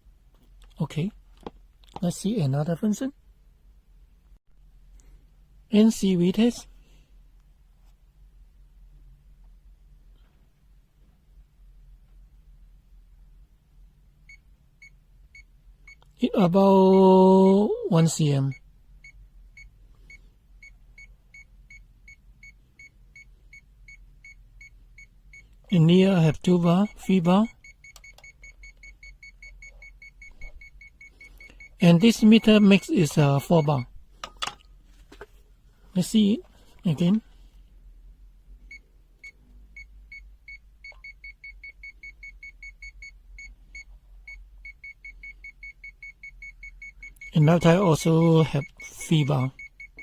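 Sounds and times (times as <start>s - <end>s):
high-pitched alarm beeps: 26.6s - 33.9s, 38.7s - 50.0s
short high-pitched beeps: 44.6s - 50.0s.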